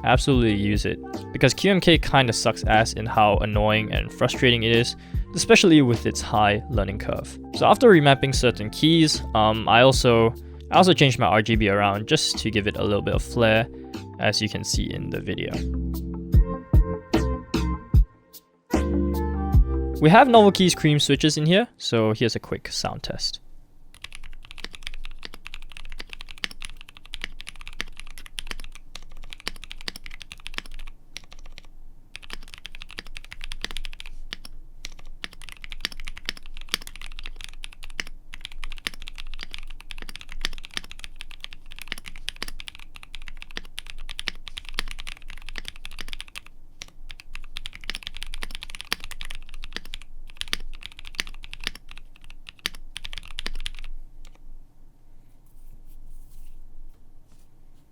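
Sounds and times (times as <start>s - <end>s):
typing on mechanical keyboard: 24.0s - 54.4s.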